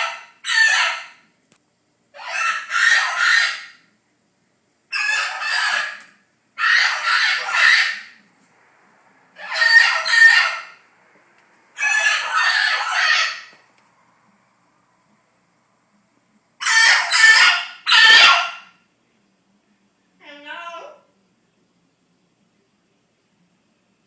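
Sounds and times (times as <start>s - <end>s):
parrots screaming: 0.0s - 1.2s, 2.2s - 3.9s, 4.9s - 8.2s, 9.4s - 10.8s, 11.8s - 13.6s, 16.6s - 18.8s.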